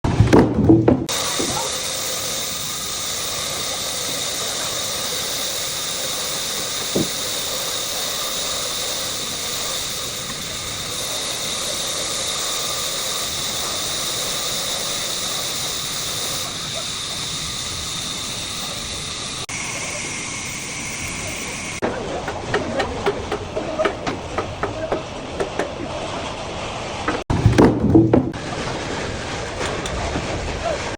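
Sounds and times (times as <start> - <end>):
wood knocking and clattering: 0.0 - 1.1, 21.8 - 25.8, 27.1 - 28.4
sawmill saw cutting timber: 0.1 - 26.4, 27.0 - 30.9.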